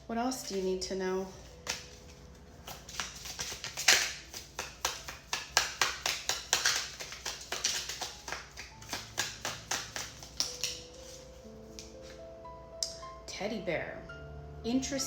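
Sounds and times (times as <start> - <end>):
cards being shuffled by hand: 0.4 - 12.2.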